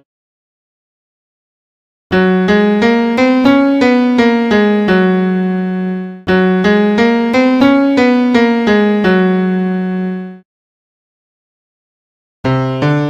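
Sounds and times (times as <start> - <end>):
piano-type keyboard phrase: 2.1 - 10.4, 12.4 - 13.0.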